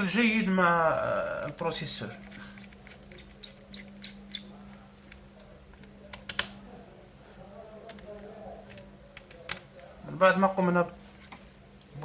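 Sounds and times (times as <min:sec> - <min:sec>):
laptop parts clicking: 0:01.5 - 0:06.6, 0:07.8 - 0:09.9.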